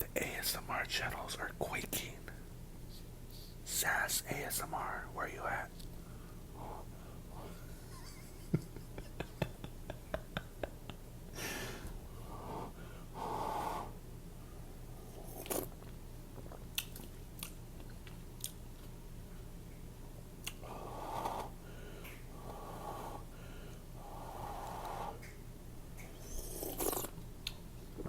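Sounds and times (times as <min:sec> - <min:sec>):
wet mouth clicks: 0:15.3 - 0:15.8, 0:20.4 - 0:20.6.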